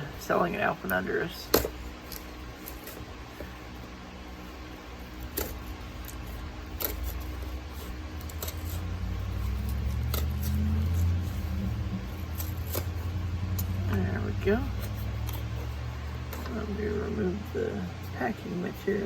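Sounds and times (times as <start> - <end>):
low rumble: 7.7 - 18.1.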